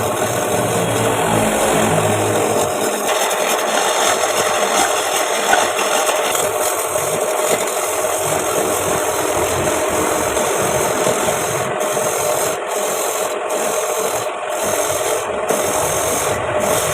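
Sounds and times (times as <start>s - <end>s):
turning tool rasping on wood: 0.0s - 16.9s
wood lathe running: 0.0s - 16.9s.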